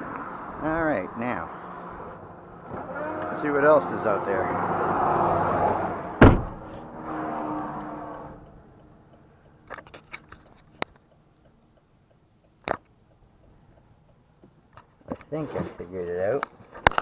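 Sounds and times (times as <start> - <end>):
car door shutting: 6.1 - 6.8.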